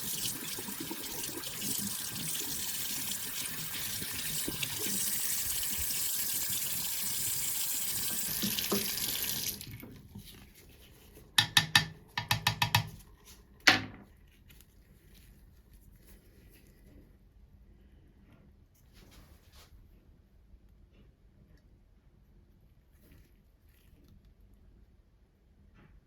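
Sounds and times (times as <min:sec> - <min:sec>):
tap water running: 0:00.0 - 0:10.4, 0:11.4 - 0:13.0.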